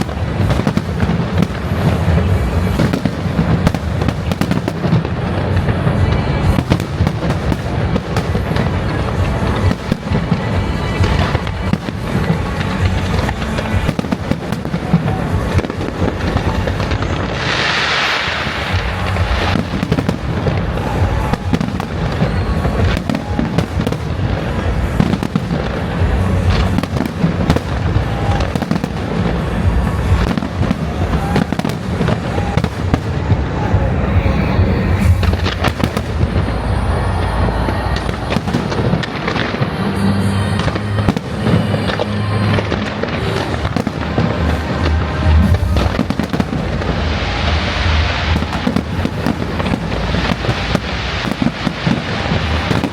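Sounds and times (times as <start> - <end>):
fireworks bangs and crackles: 0.0 - 52.9.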